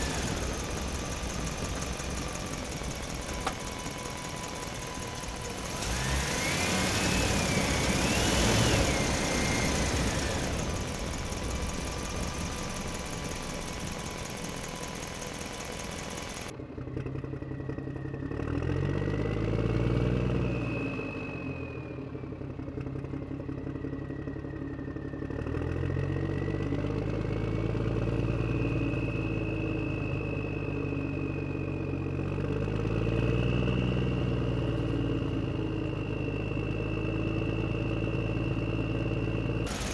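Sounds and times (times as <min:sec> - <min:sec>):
low engine-like tones: 0:00.0 - 0:39.9
toy electric motors whining: 0:39.7 - 0:39.9.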